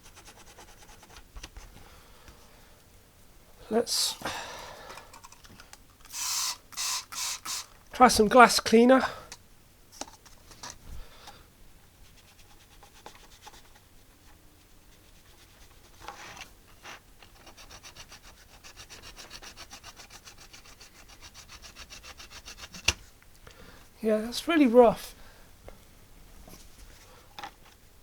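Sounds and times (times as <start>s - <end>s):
hand scrubbing a keyboard part: 0.0s - 1.7s, 14.6s - 23.0s
spray cleaner hissing: 6.1s - 7.7s.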